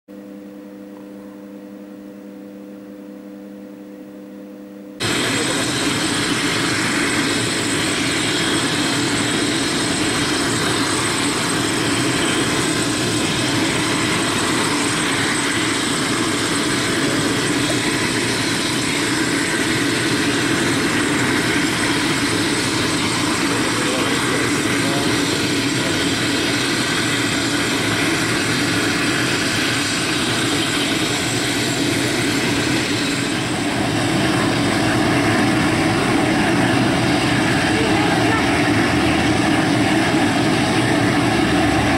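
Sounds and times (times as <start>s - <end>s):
quiet steady hum: 0.1s - 5.0s
helicopter turbines and rotor: 5.0s - 41.9s.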